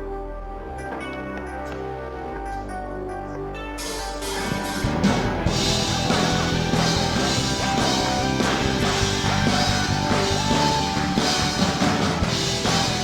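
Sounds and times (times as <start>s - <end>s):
live rock band playing: 3.9s - 13.0s.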